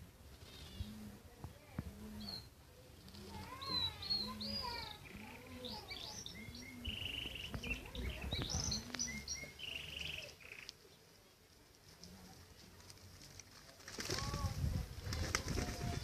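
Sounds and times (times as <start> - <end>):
pigeons cooing: 0.0 - 1.3, 2.0 - 10.7
birds chirping: 0.0 - 11.6.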